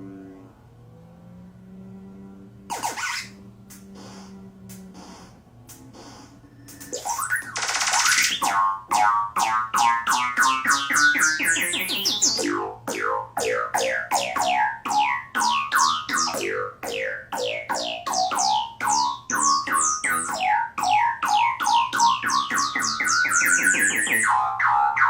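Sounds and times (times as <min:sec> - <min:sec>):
rising gliding tones: 0:06.0 - 0:17.9
downward sweeping synth notes: 0:06.6 - 0:25.0.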